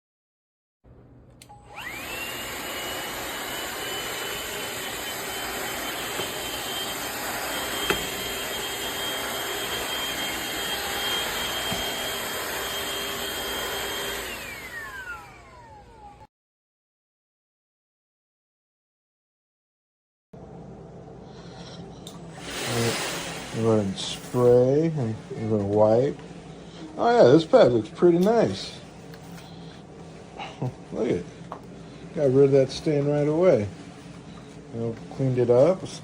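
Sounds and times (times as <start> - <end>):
vacuum motor whining: 1.4 - 16.3, 22.3 - 24.4.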